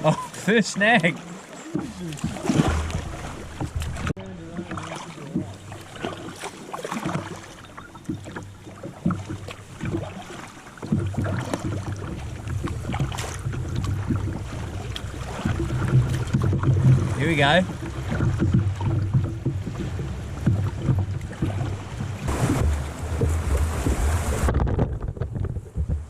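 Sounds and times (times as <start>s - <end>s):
low rushing water: 0.0s - 26.0s
paddle strokes splashing: 0.0s - 26.0s.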